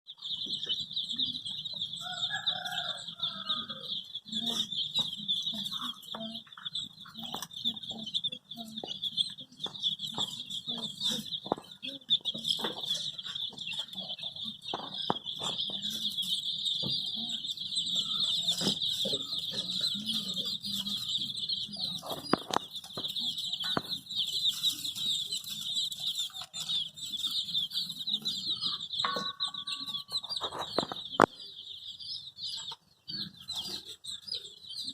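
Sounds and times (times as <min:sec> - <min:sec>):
baby chicks peeping: 0:00.1 - 0:34.9.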